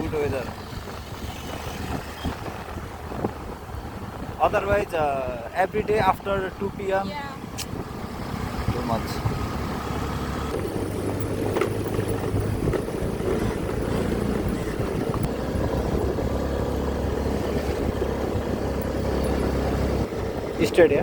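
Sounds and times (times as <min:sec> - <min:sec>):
road and wind noise: 0:00.0 - 0:21.0
low engine drone: 0:07.8 - 0:20.6.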